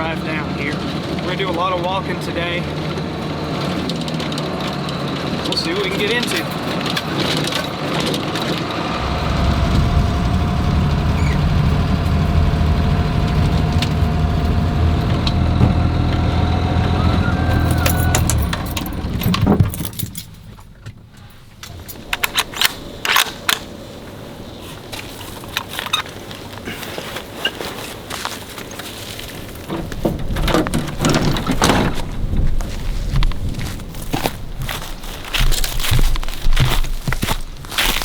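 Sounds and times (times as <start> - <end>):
engine low drone: 0.0 - 23.0.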